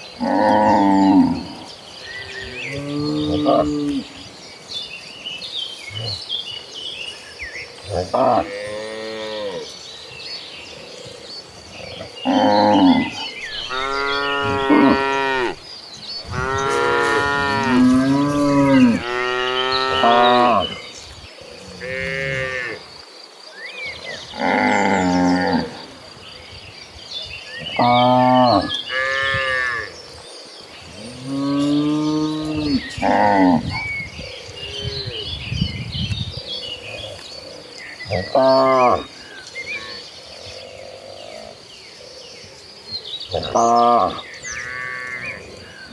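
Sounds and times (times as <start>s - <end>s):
small birds chirping: 0.0s - 45.9s
cows mooing: 7.9s - 9.7s, 12.2s - 15.6s, 16.2s - 20.8s, 21.7s - 22.8s, 31.0s - 33.8s, 38.1s - 39.1s.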